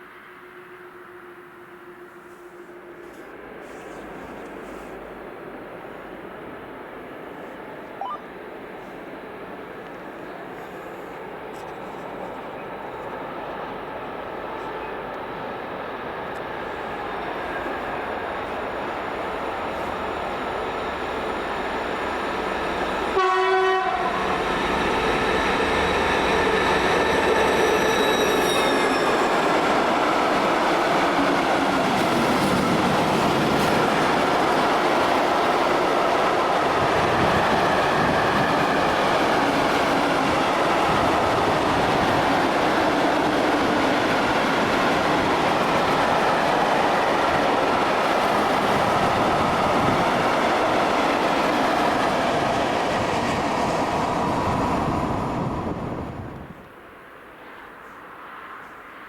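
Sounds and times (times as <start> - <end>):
locomotive horn blast: 23.1 - 24.5.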